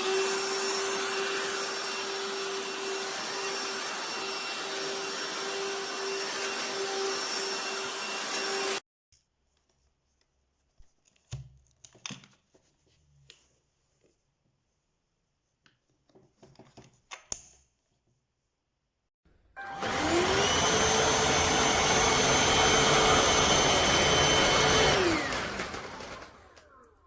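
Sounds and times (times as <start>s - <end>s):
cordless vacuum running: 0.0s - 8.8s, 19.6s - 27.0s.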